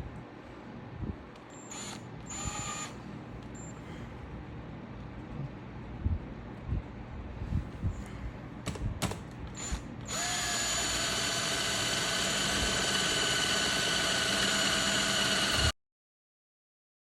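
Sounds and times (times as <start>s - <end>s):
power drill whining: 1.6s - 3.0s, 9.6s - 15.8s
handling knocks and clicks: 8.6s - 9.6s.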